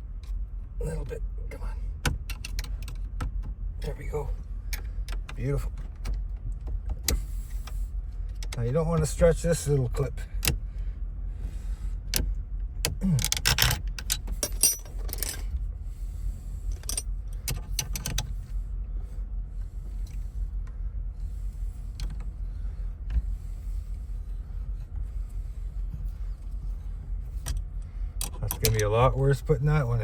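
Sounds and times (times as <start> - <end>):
low rumble: 3.0 - 30.0
metal parts and tools rattling: 13.2 - 15.5.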